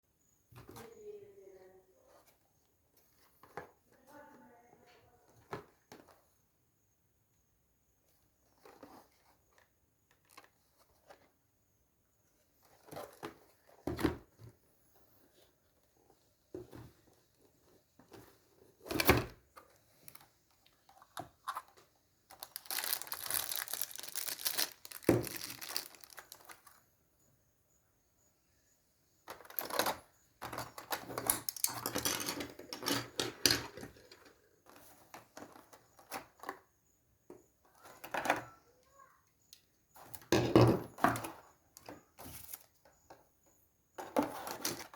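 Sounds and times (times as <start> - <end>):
packaging crinkling and tearing: 22.3 - 26.8.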